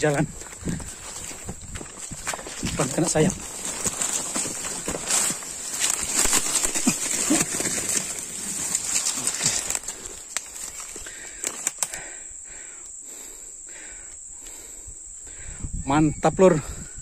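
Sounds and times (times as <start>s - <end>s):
rustling in leaves: 0.0s - 11.9s
high-pitched insect drone: 0.0s - 17.0s
sharp clicks: 11.4s - 12.0s.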